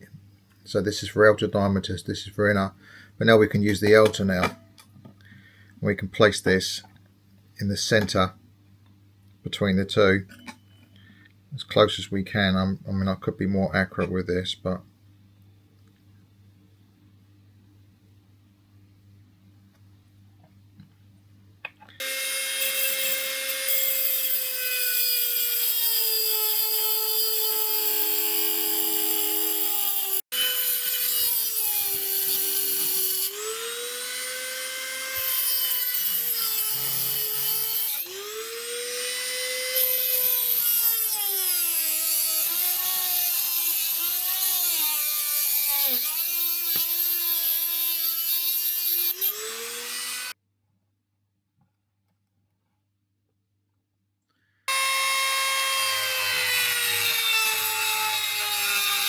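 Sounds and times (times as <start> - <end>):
rotary tool cutting metal: 22.0 - 50.4, 54.7 - 59.0.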